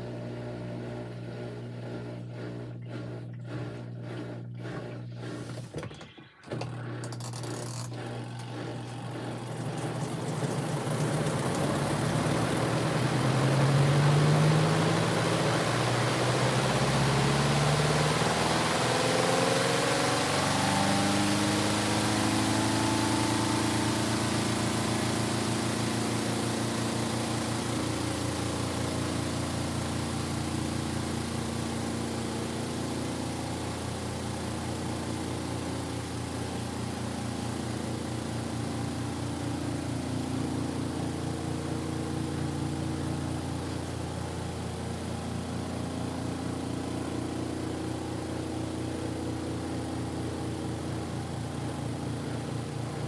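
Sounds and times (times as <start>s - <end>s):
washing machine motor and pump hum: 0.0s - 53.0s.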